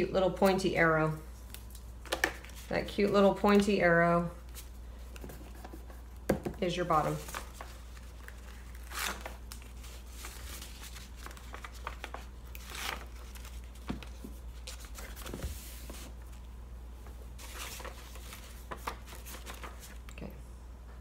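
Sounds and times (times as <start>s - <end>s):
low steady hum: 0.0s - 21.0s
paper rustling and crinkling: 6.9s - 16.5s, 17.4s - 20.1s.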